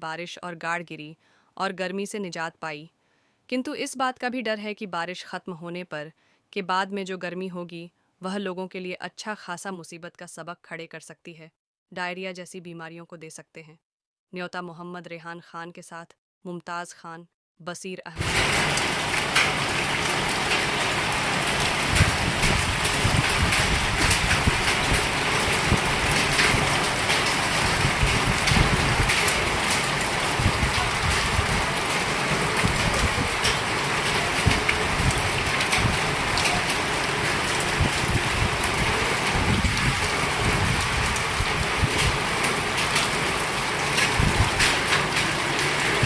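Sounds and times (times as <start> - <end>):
wind gusts rumbling on microphone: 18.2 - 42.3, 44.0 - 45.2
heavy rain pouring: 18.2 - 46.0
raindrops ticking on hard surfaces: 18.2 - 46.0.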